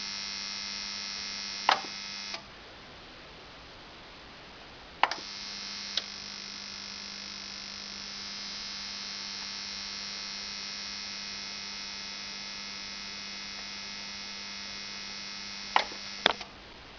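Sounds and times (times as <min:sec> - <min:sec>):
steady electrical buzz: 0:00.0 - 0:16.9
receiver clicks: 0:01.7 - 0:02.4, 0:05.0 - 0:05.3, 0:15.7 - 0:16.5.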